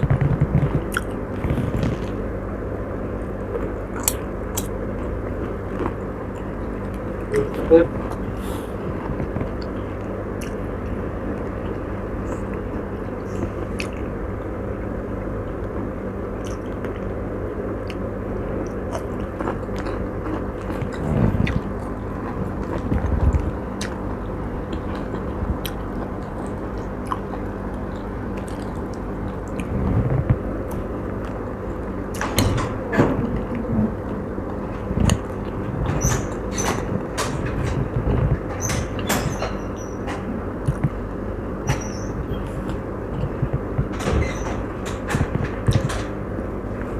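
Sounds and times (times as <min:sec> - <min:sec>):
low background hum: 0:00.0 - 0:46.9
chewing and biting food: 0:03.5 - 0:14.2, 0:18.6 - 0:31.5.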